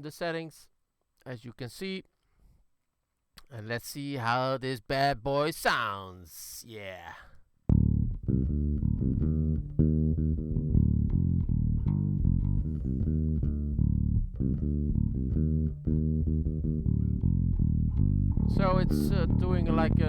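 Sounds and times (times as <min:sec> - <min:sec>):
electric bass plucked notes: 0:07.7 - 0:20.0.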